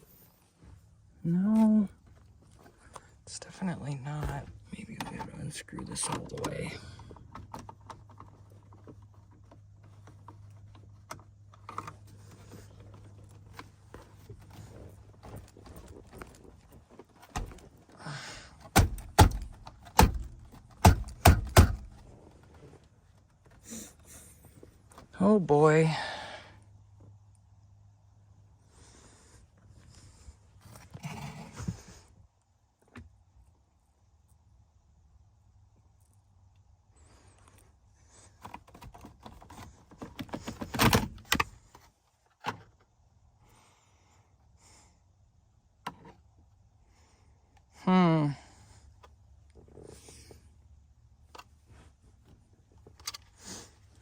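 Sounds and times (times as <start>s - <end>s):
knocking on steering column parts: 18.7s - 22.0s.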